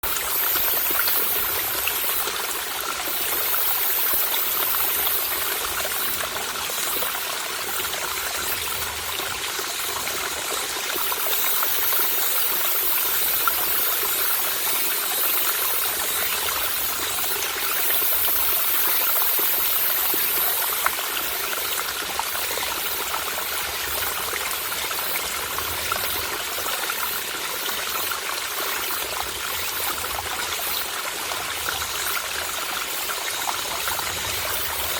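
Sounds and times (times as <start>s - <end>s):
cicadas buzzing: 0.0s - 9.2s, 10.8s - 25.4s
stream trickling over rocks: 0.0s - 34.9s.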